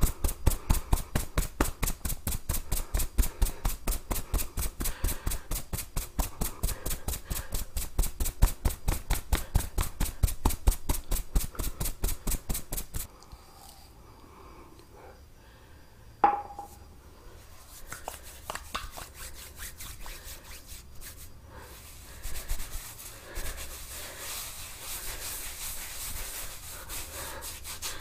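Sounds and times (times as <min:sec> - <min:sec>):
head massage tapping: 0:00.1 - 0:02.9, 0:17.9 - 0:19.1.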